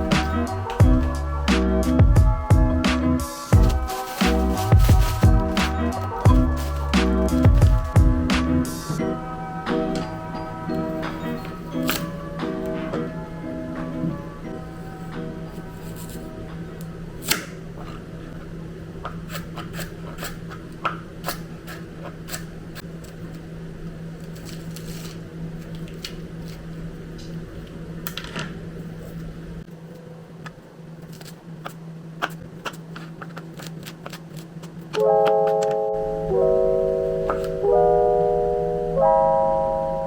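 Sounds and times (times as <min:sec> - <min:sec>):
piano music: 0:00.0 - 0:16.7, 0:35.0 - 0:40.0
steady low hum: 0:00.0 - 0:24.4, 0:25.2 - 0:40.0.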